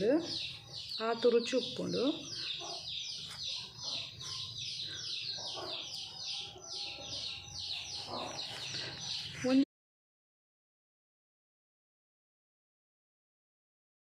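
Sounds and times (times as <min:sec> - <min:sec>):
birds chirping: 0:00.0 - 0:09.6.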